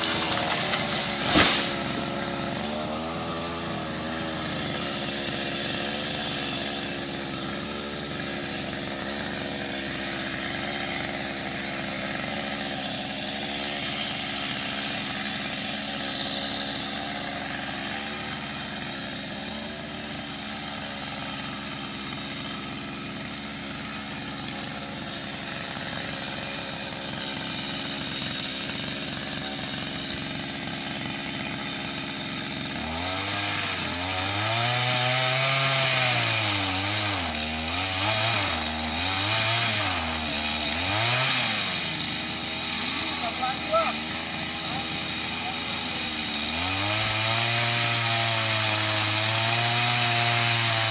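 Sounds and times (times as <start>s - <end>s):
chainsaw engine running: 0.0s - 50.9s.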